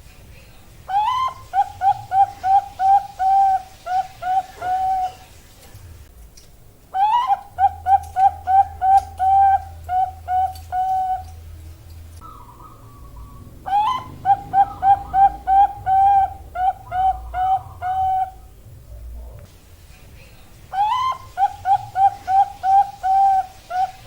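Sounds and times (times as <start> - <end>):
dove cooing: 0.9 - 5.3, 7.0 - 11.4, 12.2 - 18.6, 20.7 - 24.0.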